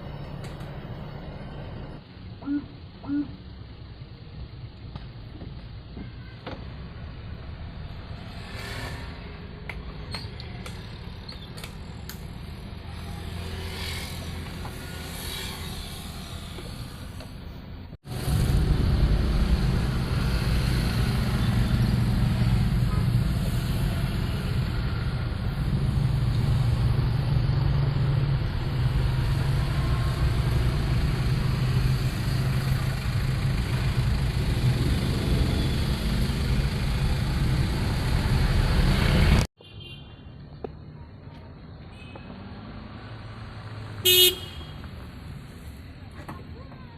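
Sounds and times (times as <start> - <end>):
van engine rumbling: 0.0 - 9.2, 14.1 - 39.5.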